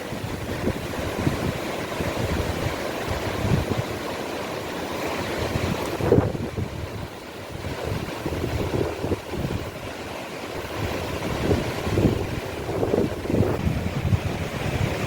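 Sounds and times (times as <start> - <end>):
wind buffeting microphone: 0.0 - 4.2, 5.1 - 15.0.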